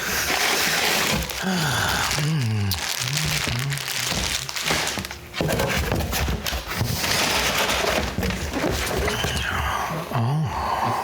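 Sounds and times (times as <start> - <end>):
packaging rustling and crinkling: 0.0 - 9.4
person humming: 1.2 - 4.9, 9.4 - 11.0.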